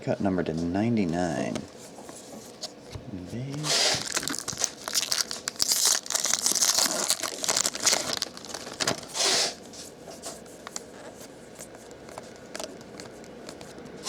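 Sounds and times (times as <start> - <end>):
faint handling rustle: 0.1 - 14.0
foil wrapper tearing and crumpling: 3.7 - 9.6.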